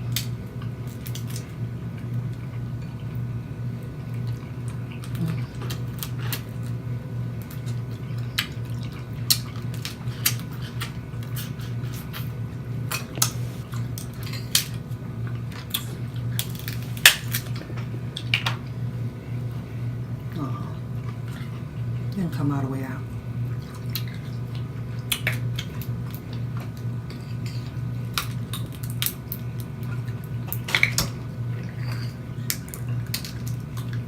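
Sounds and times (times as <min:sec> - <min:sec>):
steady low hum: 0:00.0 - 0:34.0
crab shell cracking: 0:15.6 - 0:18.6, 0:28.1 - 0:29.7.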